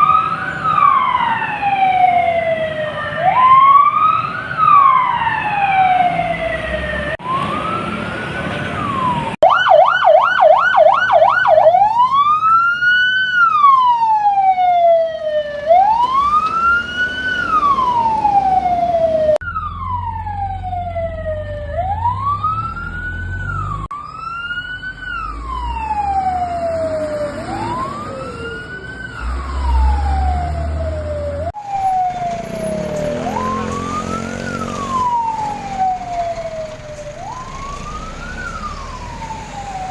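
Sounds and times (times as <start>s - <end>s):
fire truck sirens wailing: 0.0s - 39.9s
siren yelp: 0.0s - 39.9s
truck engine rumble: 19.3s - 39.9s.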